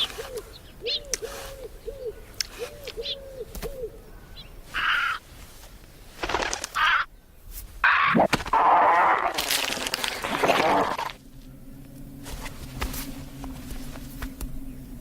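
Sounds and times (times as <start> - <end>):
owl hooting: 0.0 - 5.3, 6.8 - 7.1, 7.8 - 9.0.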